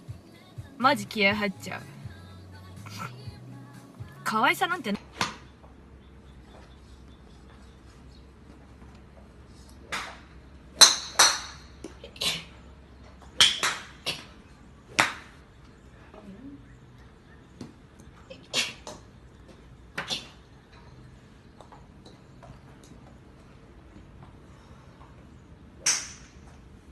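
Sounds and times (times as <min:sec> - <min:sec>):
woman sneezing: 0:12.1 - 0:12.5, 0:18.5 - 0:18.9.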